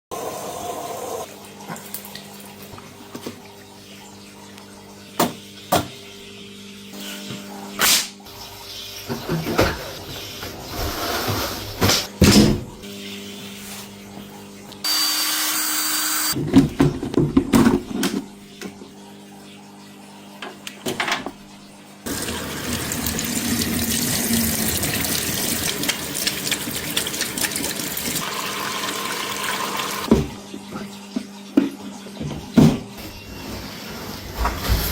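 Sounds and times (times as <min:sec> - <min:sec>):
water rushing into washing machine: 0:07.8 - 0:12.7, 0:22.0 - 0:34.9.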